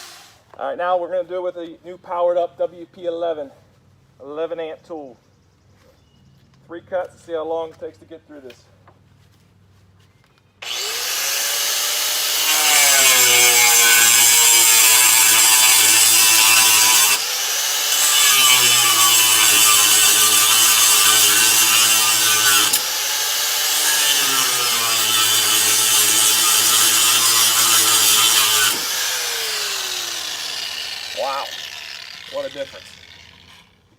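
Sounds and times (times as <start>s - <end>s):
angle grinder cutting metal pipe: 10.6s - 33.8s.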